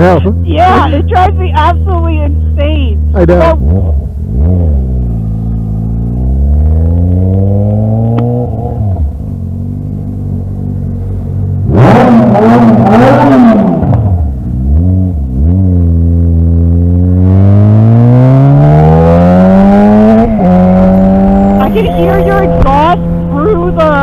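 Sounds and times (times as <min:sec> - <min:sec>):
engine revving: 0:00.0 - 0:24.0
motorcycle engine accelerating: 0:00.0 - 0:24.0.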